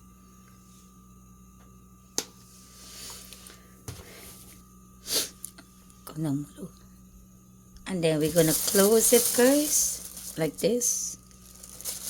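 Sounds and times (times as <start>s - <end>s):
steady electrical hum: 0.0s - 12.0s
soft rustle: 8.2s - 10.5s, 11.4s - 12.0s.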